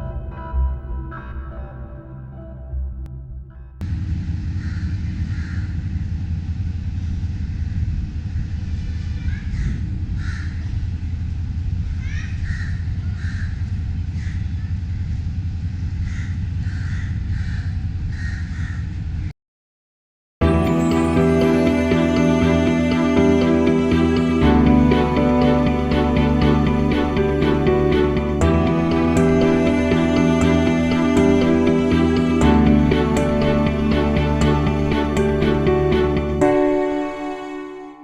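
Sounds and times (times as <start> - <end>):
steady low rumble: 0.0 - 16.6
crows cawing: 4.6 - 5.7, 9.6 - 10.6, 12.1 - 13.6, 16.1 - 18.8.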